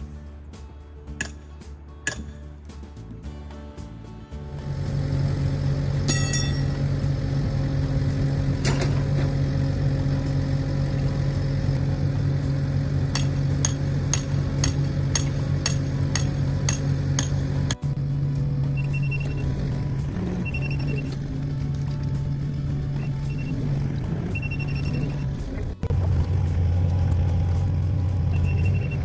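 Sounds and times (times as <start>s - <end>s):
work machine engine idling: 4.5s - 29.0s
ringing metallic clink: 5.9s - 6.9s
sharp knocks: 13.1s - 17.8s.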